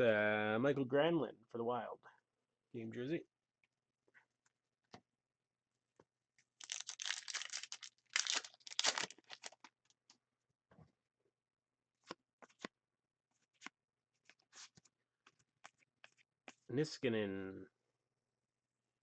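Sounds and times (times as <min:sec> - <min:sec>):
foil wrapper tearing and crinkling: 0:06.6 - 0:09.7.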